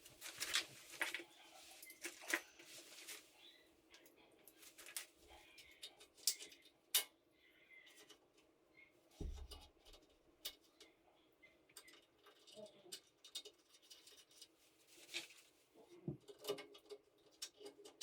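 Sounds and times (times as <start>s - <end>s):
faint clicks and taps: 8.0s - 18.0s.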